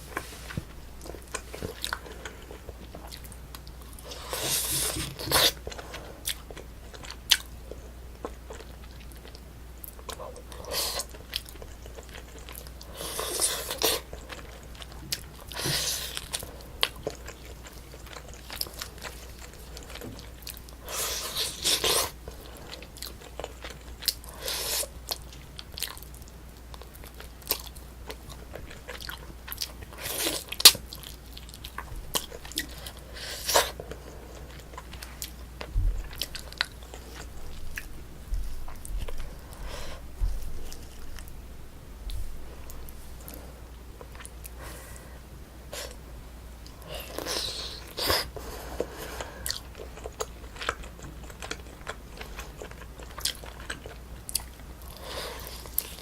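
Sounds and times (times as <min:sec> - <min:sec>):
person chewing wetly: 0:00.2 - 0:41.4, 0:46.6 - 0:56.0.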